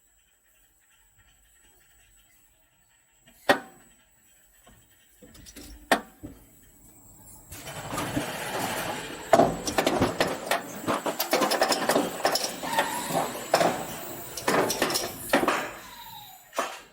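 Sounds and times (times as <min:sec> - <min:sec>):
roller coaster rattling on track: 0:00.0 - 0:16.9.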